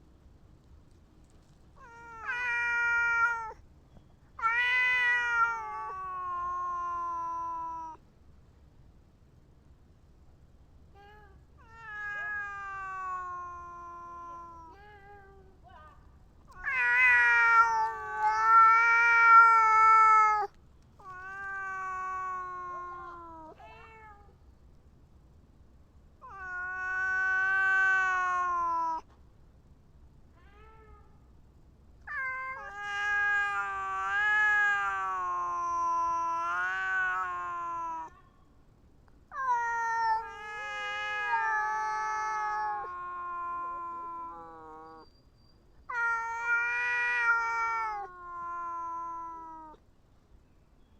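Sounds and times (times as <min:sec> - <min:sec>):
cat yowling: 0:01.8 - 0:03.6, 0:04.4 - 0:08.0, 0:11.6 - 0:15.4, 0:16.5 - 0:24.3, 0:26.2 - 0:29.1, 0:32.1 - 0:38.3, 0:39.3 - 0:45.1, 0:45.9 - 0:49.8.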